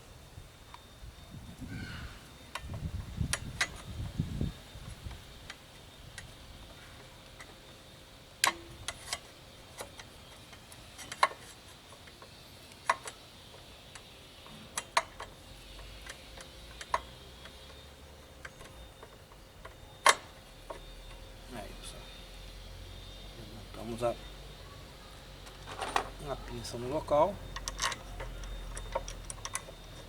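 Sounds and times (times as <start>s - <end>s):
metal tools clinking: 25.5s - 30.0s.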